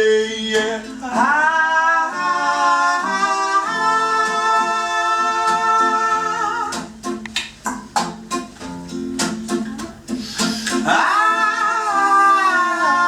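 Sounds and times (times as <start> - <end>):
man singing wordlessly: 0.0 - 7.0, 10.7 - 13.0
acoustic guitar strumming: 0.0 - 13.0.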